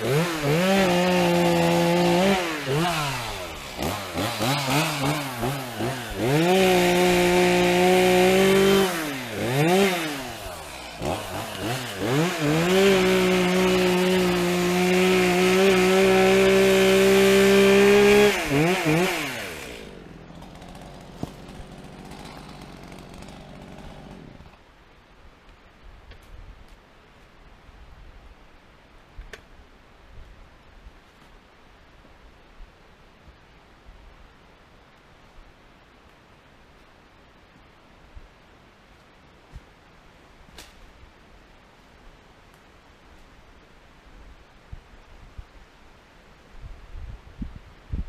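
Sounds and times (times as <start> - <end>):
chainsaw cutting wood: 0.0 - 24.6.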